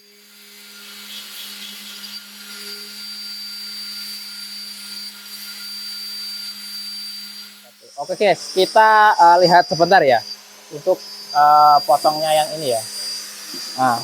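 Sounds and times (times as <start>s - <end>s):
router spindle whine and hum: 0.0s - 14.0s.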